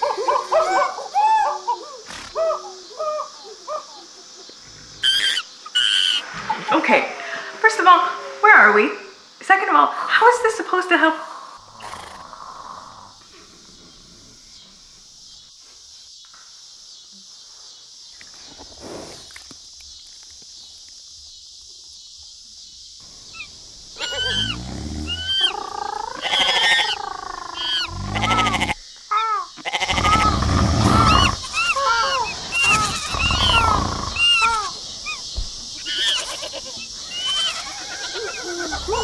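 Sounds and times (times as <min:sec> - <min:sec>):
steady high hiss: 0:00.0 - 0:39.0
goats bleating: 0:26.2 - 0:27.0, 0:27.6 - 0:28.8, 0:29.6 - 0:39.0.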